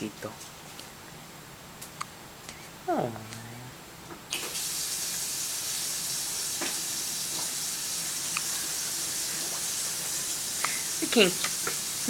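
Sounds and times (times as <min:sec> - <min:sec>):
steady hiss: 0:04.3 - 0:12.0.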